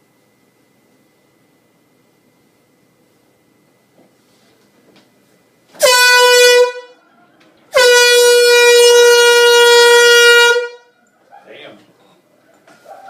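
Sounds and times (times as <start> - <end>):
air horn blasts: 5.8 - 7.0, 7.7 - 11.0.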